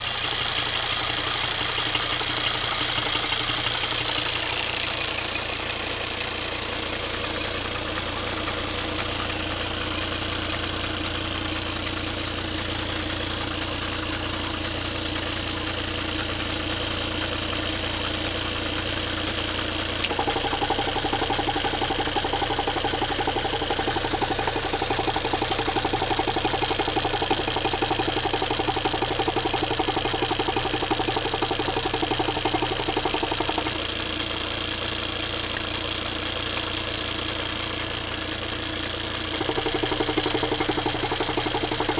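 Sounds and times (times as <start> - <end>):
diesel engine idling: 0.0 - 41.9
sharp click: 39.4 - 41.9.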